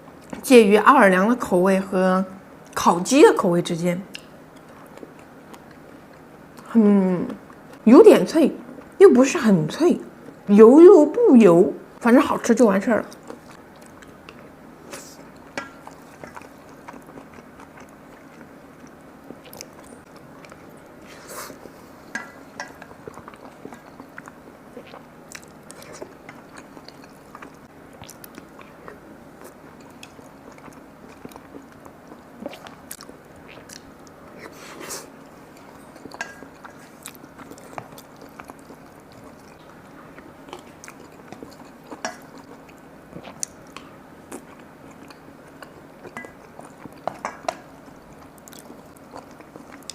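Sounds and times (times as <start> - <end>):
steady low hum: 0.0 - 49.9
person chewing food: 4.1 - 6.7, 13.1 - 49.9.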